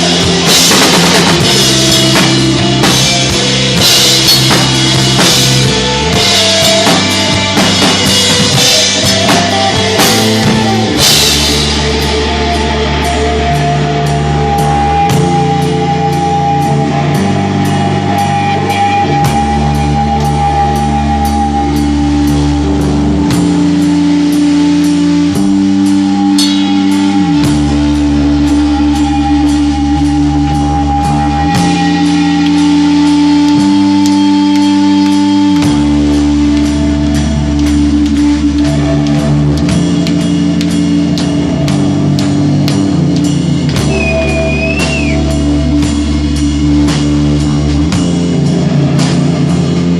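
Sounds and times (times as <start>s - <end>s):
drums and crashing cymbals: 0.0s - 49.9s
held guitar note: 0.0s - 49.9s
rock band playing live: 0.0s - 49.9s.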